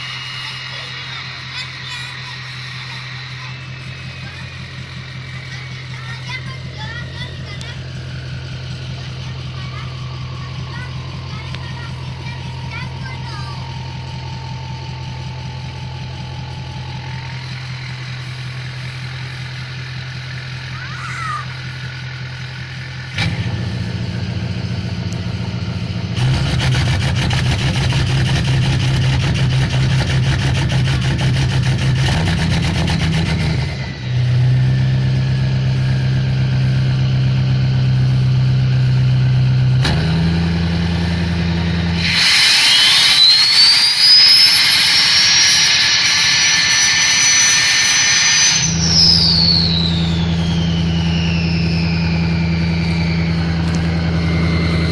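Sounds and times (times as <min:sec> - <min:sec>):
turbo whistle: 0:00.0 - 0:25.3, 0:39.8 - 0:54.9
diesel engine idling and revving: 0:00.0 - 0:54.9.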